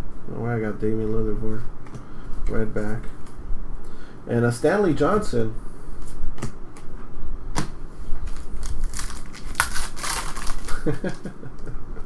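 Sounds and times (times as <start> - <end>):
wrapper crinkling and crumpling: 8.2 - 11.1.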